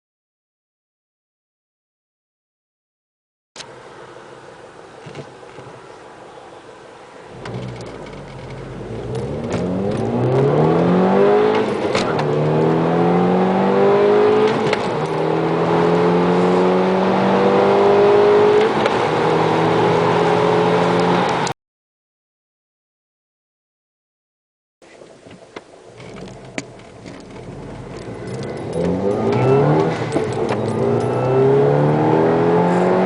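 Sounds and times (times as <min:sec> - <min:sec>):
car engine accelerating: 0:07.3 - 0:21.5, 0:25.9 - 0:33.0.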